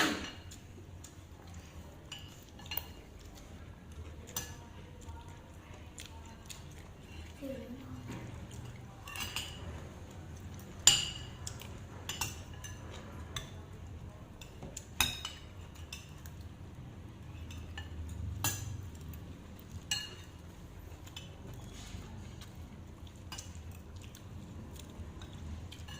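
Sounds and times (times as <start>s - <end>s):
cutlery clinking against dishes: 0.0s - 0.6s, 2.1s - 3.4s, 8.0s - 9.9s, 10.5s - 13.7s, 14.4s - 16.5s, 17.3s - 20.4s, 24.8s - 25.9s.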